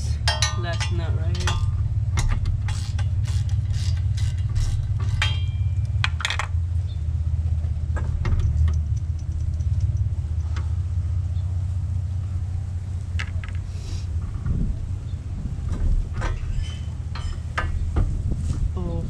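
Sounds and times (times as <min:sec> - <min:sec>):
steady low rumble: 0:00.0 - 0:19.0
metal tools clinking: 0:00.1 - 0:06.6, 0:16.3 - 0:17.8.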